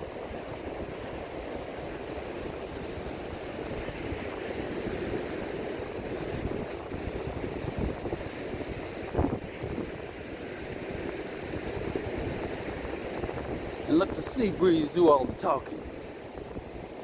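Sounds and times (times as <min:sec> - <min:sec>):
surf washing: 0:00.0 - 0:17.0
wind buffeting microphone: 0:00.3 - 0:17.0.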